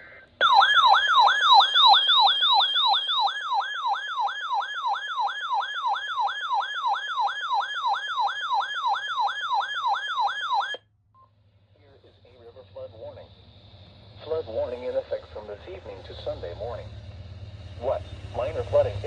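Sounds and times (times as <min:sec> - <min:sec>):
electronic siren alert tone: 0:00.4 - 0:10.8.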